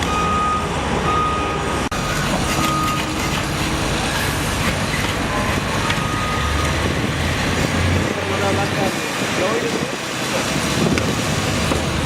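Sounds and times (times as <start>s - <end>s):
reversing alarm beeping: 0.0s - 7.0s
heavy vehicle running: 0.0s - 12.0s
traffic noise: 0.0s - 12.0s.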